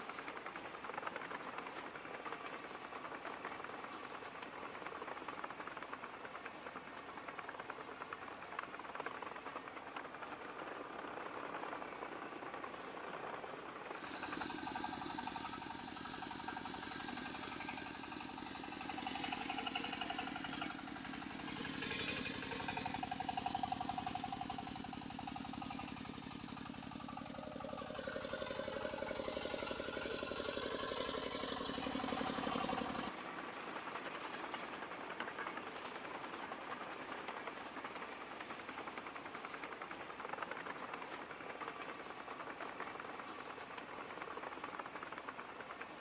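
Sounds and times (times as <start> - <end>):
remote-control model engine running: 13.9 - 33.1.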